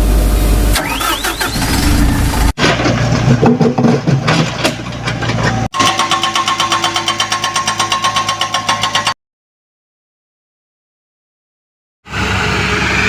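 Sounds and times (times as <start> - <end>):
diesel engine revving and idling: 0.0 - 2.6, 12.1 - 13.0.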